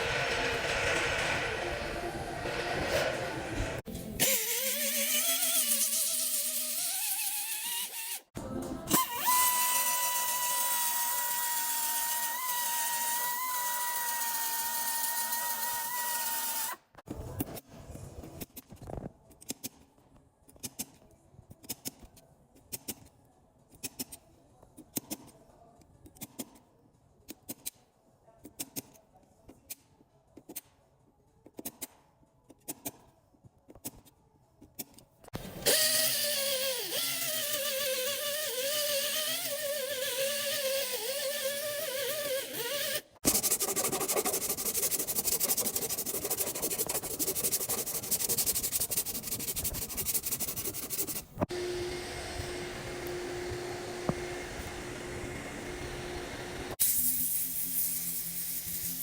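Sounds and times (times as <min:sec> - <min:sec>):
rasping like sanding: 0:43.2 - 0:51.4.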